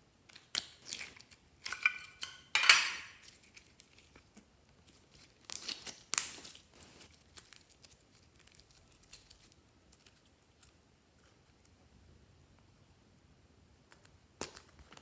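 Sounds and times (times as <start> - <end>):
slime crackling and popping: 5.1 - 10.1.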